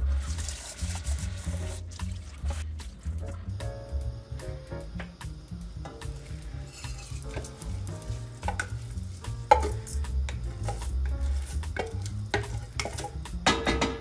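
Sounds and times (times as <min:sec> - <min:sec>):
background music: 0:00.0 - 0:14.0
hot oil sizzling: 0:00.0 - 0:14.0
spoon stirring rice in pot: 0:05.9 - 0:13.9
spoon knocking against pot: 0:08.4 - 0:08.8, 0:09.5 - 0:10.9, 0:11.7 - 0:14.0.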